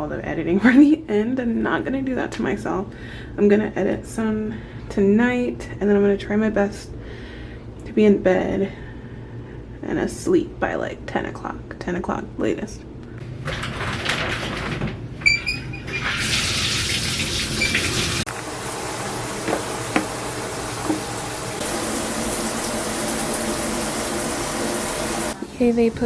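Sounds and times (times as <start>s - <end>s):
water running from tap: 15.9s - 26.0s.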